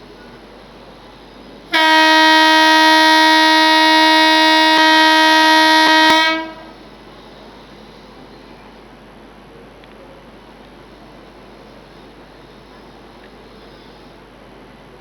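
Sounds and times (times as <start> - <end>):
electric locomotive horn blast: 1.7 - 6.8.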